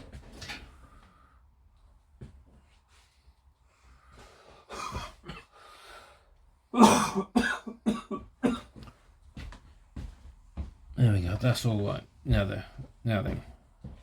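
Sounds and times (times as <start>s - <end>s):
man coughing: 4.7s - 5.5s, 6.8s - 8.8s.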